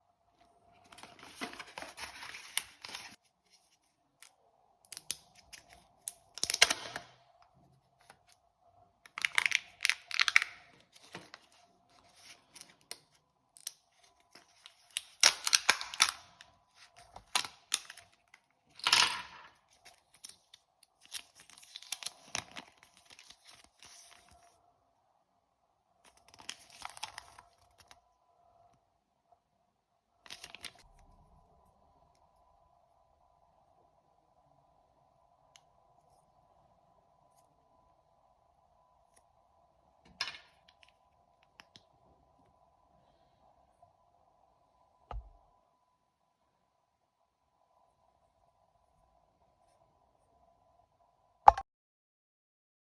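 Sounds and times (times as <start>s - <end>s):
plastic packaging tearing and crinkling: 9.1s - 11.5s, 14.6s - 18.2s, 19.9s - 24.3s, 26.2s - 27.9s
faint steady hum: 19.4s - 51.4s.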